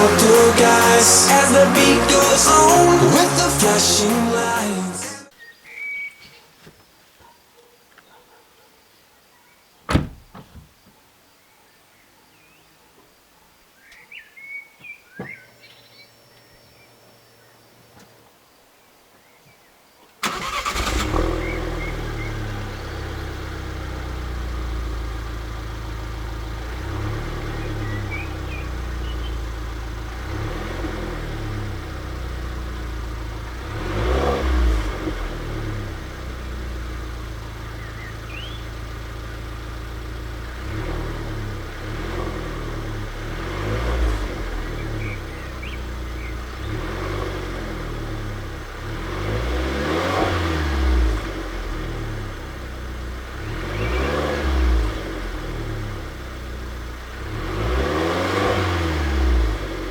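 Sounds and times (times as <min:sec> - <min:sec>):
car engine starting and idling: 0:00.0 - 0:05.3, 0:20.2 - 0:59.9
faint bird chirps: 0:05.3 - 0:09.9, 0:10.9 - 0:20.1, 0:27.5 - 0:29.5, 0:37.7 - 0:38.8, 0:44.7 - 0:46.4.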